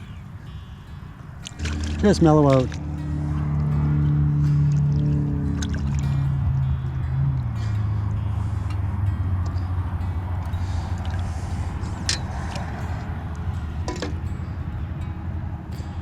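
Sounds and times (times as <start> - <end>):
metallic clinks of fishing hooks: 11.8 - 13.0.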